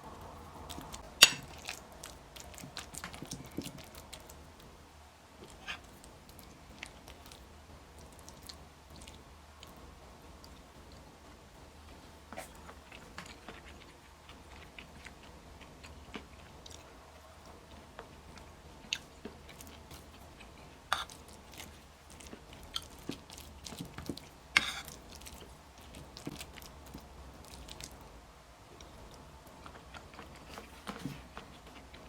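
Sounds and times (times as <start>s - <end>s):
person chewing: 0.6s - 4.5s, 11.9s - 28.1s, 28.8s - 32.0s.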